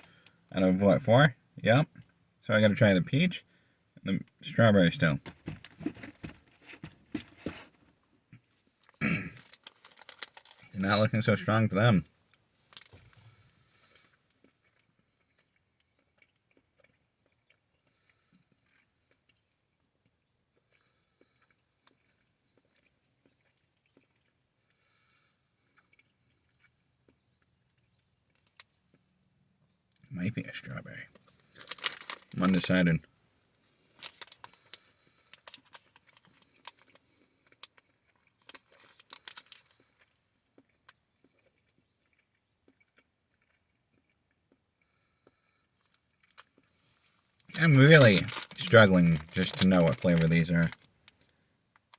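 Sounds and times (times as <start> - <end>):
chewing gummy snacks: 8.4 - 11.1, 12.3 - 30.1, 31.1 - 51.9
snack pouch crinkling: 9.3 - 10.7, 31.1 - 32.9, 33.8 - 41.0, 45.8 - 51.9.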